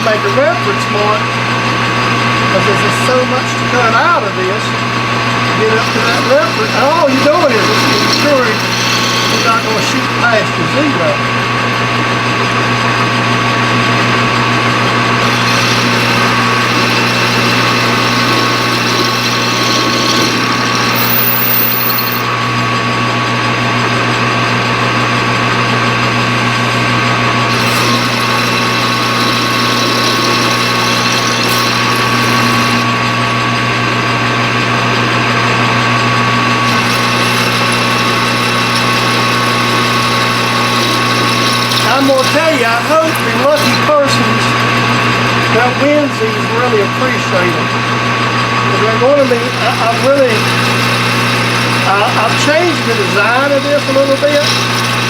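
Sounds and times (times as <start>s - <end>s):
metal lathe motor hum: 0.0s - 55.0s
boring bar cutting hiss: 5.7s - 10.3s, 15.2s - 22.7s, 27.5s - 32.9s, 36.6s - 43.9s, 49.2s - 55.0s.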